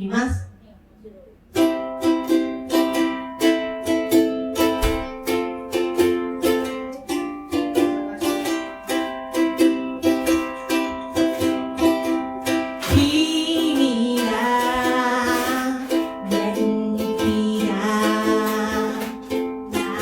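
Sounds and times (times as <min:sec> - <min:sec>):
ukulele strumming chords: 0:01.5 - 0:20.0.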